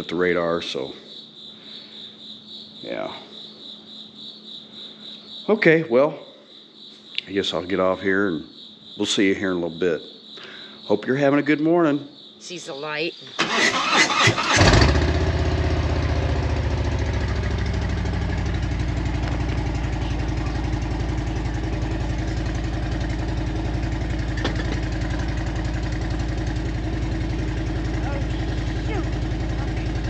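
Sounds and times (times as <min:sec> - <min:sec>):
motorcycle engine starting and idling: 0:13.4 - 0:30.0.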